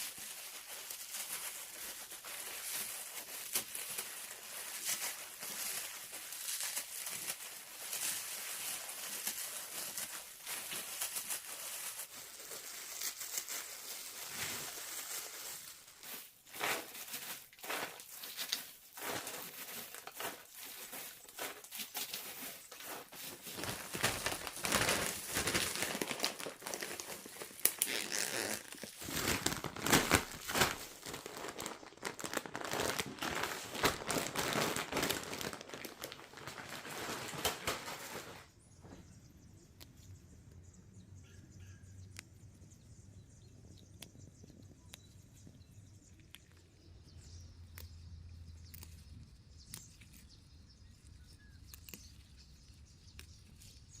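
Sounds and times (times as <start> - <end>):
crinkling and rustling: 0.0 - 39.1.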